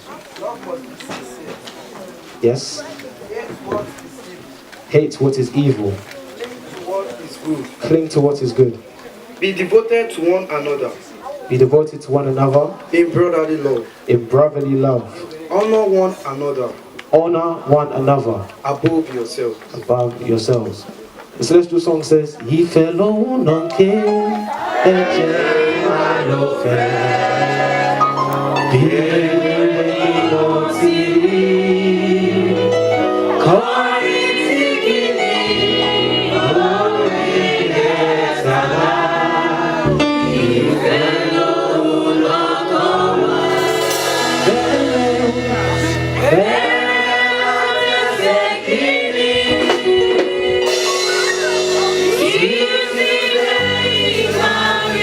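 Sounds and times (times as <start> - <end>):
choir and congregation singing hymn: 23.2 - 55.0
sustained low accompanying notes: 39.8 - 41.6, 43.4 - 47.2.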